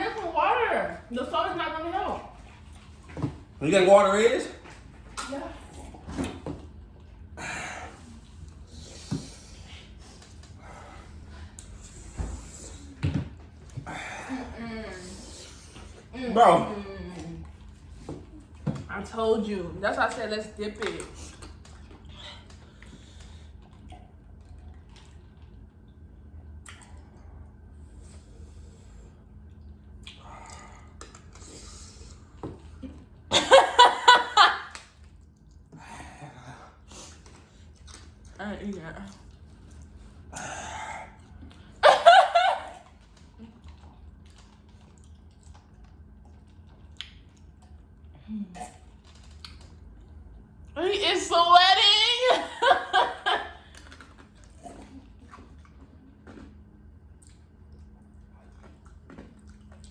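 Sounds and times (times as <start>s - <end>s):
low steady hum: 0.0s - 59.9s
person chewing food: 21.2s - 32.8s, 34.7s - 38.4s, 42.8s - 50.8s, 53.6s - 59.9s.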